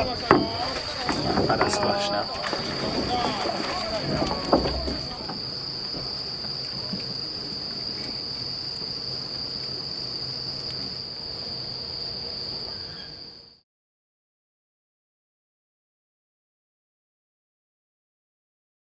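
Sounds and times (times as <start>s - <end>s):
crickets trilling: 0.0s - 13.6s
knock: 2.6s - 5.4s.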